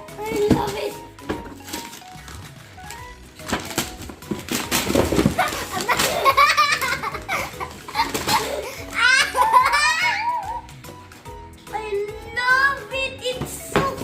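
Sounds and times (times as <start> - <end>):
toy packaging rustling: 0.0 - 11.2
girls squealing and giggling: 8.0 - 10.6.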